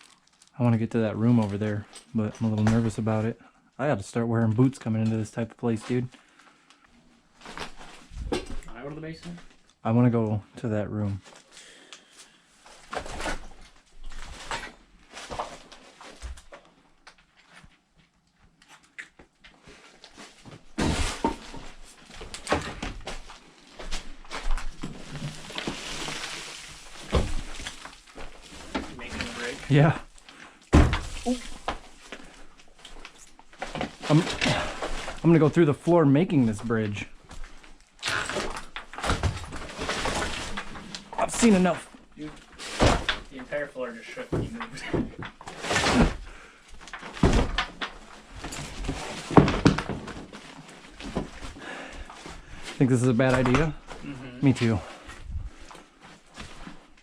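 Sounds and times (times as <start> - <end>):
footsteps on debris-strewn wooden floor: 12.2 - 18.5, 19.4 - 35.6, 36.4 - 43.3, 44.3 - 57.0.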